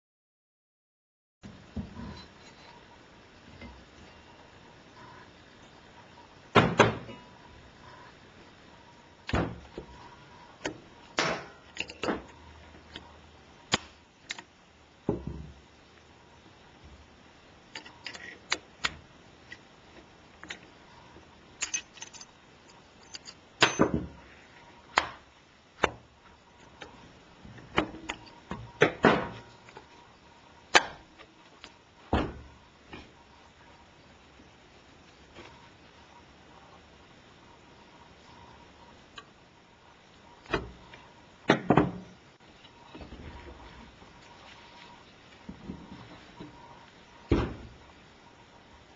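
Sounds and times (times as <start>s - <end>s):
tools and parts clicking and knocking: 10.6s - 12.3s, 21.6s - 24.2s.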